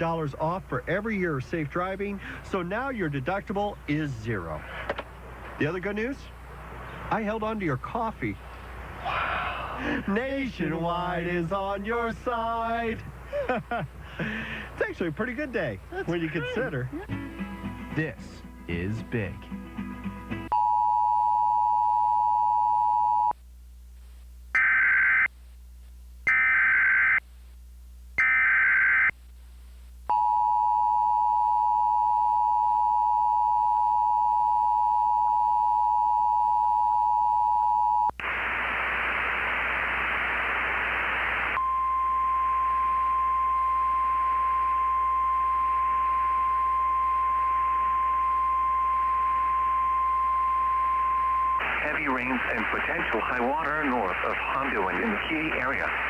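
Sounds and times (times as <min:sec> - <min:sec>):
steady weather radio alert tone: 0:09.8 - 0:19.5, 0:38.2 - 0:56.0
static: 0:38.1 - 0:41.7, 0:45.8 - 0:56.0.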